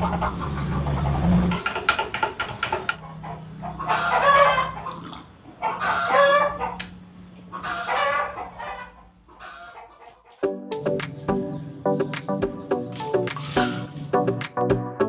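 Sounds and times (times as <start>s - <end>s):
rooster crowing: 3.7s - 4.9s, 5.6s - 6.8s, 7.6s - 10.2s.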